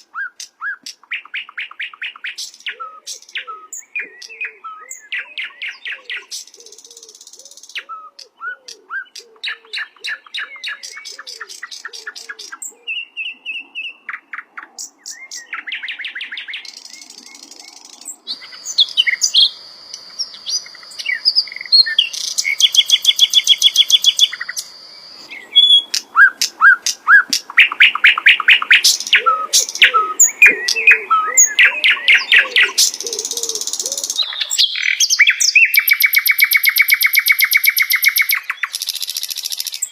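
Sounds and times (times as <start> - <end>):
flycatcher singing: 9.1 - 39.9.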